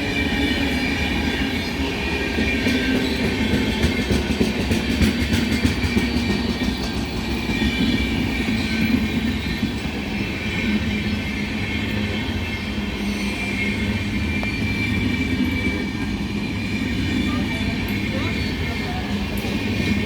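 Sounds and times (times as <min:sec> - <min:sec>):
train wheels rumbling on rails: 0:00.0 - 0:20.0
wheels clicking over rail joints: 0:02.4 - 0:10.0.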